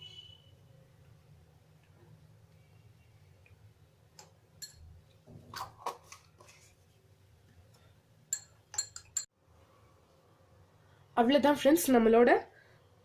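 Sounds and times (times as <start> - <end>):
spoon clinking against glass: 4.6 - 4.9, 8.3 - 9.3.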